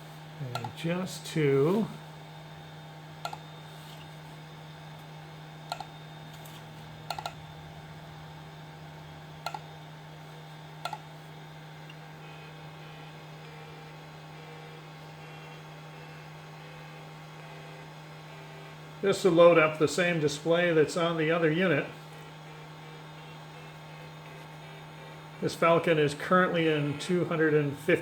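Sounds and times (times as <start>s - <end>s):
low electrical hum: 0.0s - 28.0s
sharp computer clicks: 0.5s - 0.8s, 5.7s - 7.4s, 9.4s - 9.6s, 10.8s - 11.0s.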